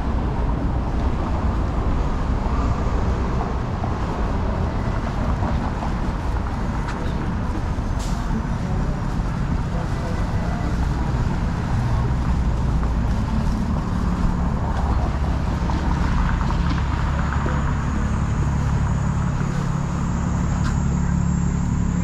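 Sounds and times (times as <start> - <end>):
traffic engine rumble: 0.0 - 22.0.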